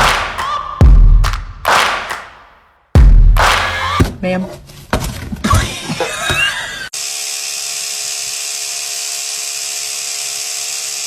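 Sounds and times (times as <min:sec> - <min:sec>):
small electric motor whirring: 0:06.9 - 0:11.0.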